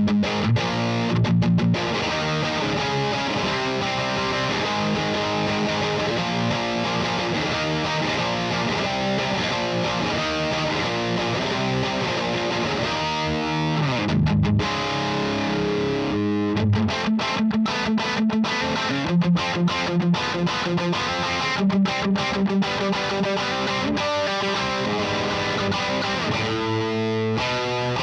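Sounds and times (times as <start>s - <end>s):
overdriven electric guitar chords: 0.0s - 28.0s.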